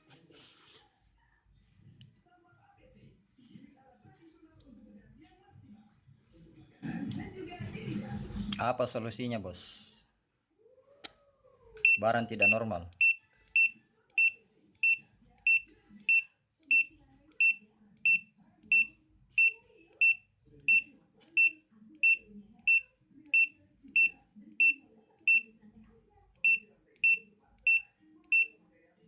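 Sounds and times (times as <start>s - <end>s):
short high alarm beeps: 11.8s - 22.8s.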